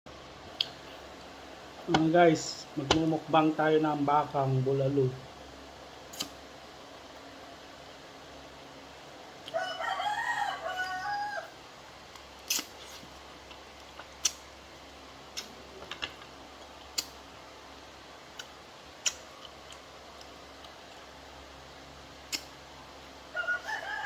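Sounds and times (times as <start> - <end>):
rooster crowing: 9.5 - 11.6, 23.3 - 24.0.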